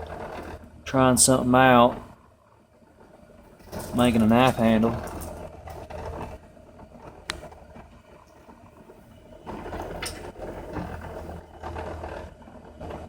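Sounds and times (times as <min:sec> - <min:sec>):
printer motors humming: 0:03.0 - 0:13.0.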